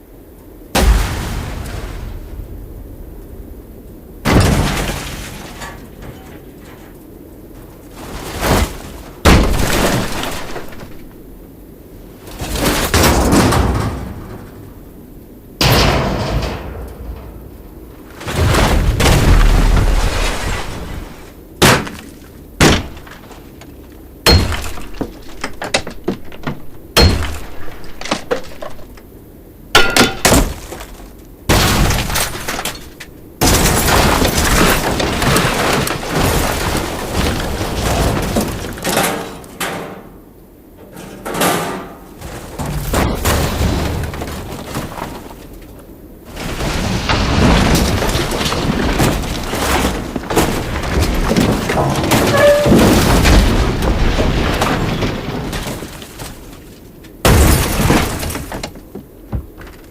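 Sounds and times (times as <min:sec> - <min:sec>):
scrap metal clattering onto ground: 0:04.3 - 0:11.1, 0:15.6 - 0:19.0, 0:31.8 - 0:40.2, 0:40.8 - 0:45.6, 0:47.4 - 0:53.5.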